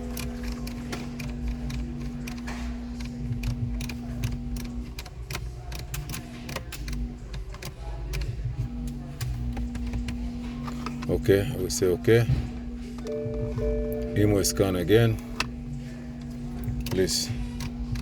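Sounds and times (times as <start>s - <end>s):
irregular mechanical clicks: 0.0s - 10.2s
electrical hum: 0.0s - 18.0s.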